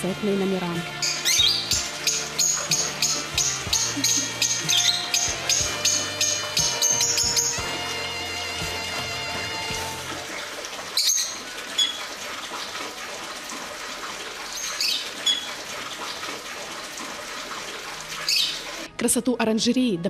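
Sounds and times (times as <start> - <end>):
water flowing: 0.0 - 18.9
parrots calling: 0.9 - 12.1, 18.2 - 18.7.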